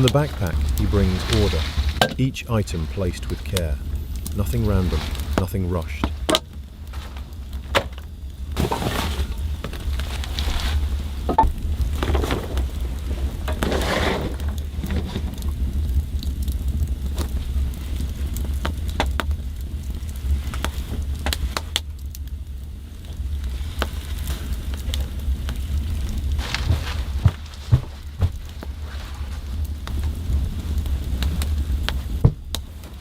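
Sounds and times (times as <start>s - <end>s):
camping gear rustling: 0.0s - 15.6s, 23.4s - 33.0s
steady low rumble: 0.0s - 33.0s.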